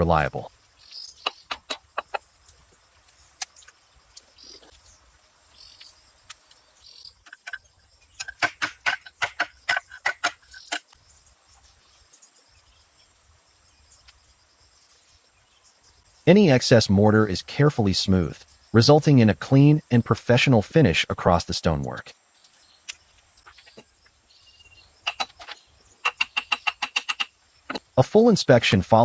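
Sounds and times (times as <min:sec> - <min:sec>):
stones knocking against stone: 0:01.2 - 0:02.2
faint bird chirps: 0:22.3 - 0:29.0.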